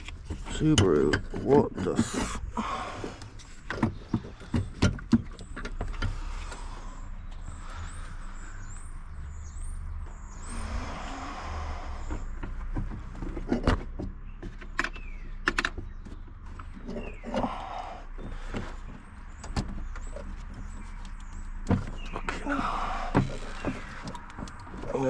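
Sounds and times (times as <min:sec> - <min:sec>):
tools and metal parts clanking: 0:00.0 - 0:02.5.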